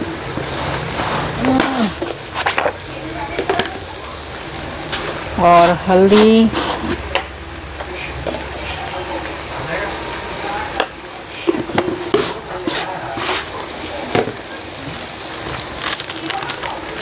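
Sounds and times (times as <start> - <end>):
masala sizzling in a pan: 0.0 - 17.0
spoon scraping a pan: 0.4 - 3.9, 4.9 - 7.2, 10.8 - 13.6.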